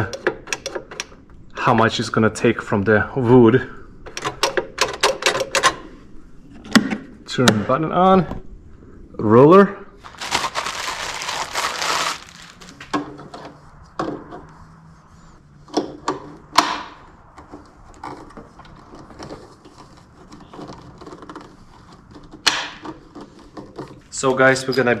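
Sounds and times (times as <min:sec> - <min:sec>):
scraping rustle: 0:10.0 - 0:13.7.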